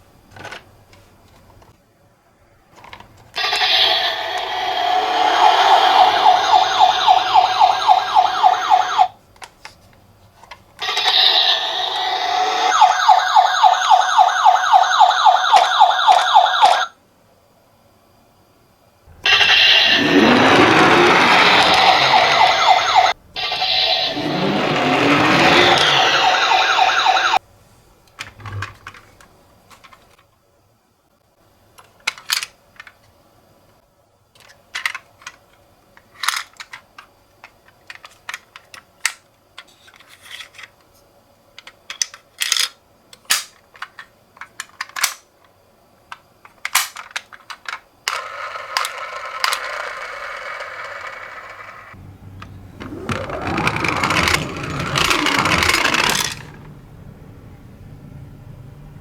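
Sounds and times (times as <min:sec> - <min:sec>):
rolling whir: 0:02.8 - 0:09.2, 0:19.1 - 0:27.4, 0:48.1 - 0:59.0
toy cars clicking and clattering: 0:02.8 - 0:09.8, 0:10.4 - 0:12.8, 0:19.3 - 0:27.4, 0:28.2 - 0:30.2, 0:31.8 - 0:33.1, 0:34.3 - 0:40.9, 0:41.6 - 0:56.7
wailing ambulance siren: 0:03.4 - 0:09.2, 0:10.9 - 0:16.9, 0:19.2 - 0:27.4, 0:52.0 - 0:56.7.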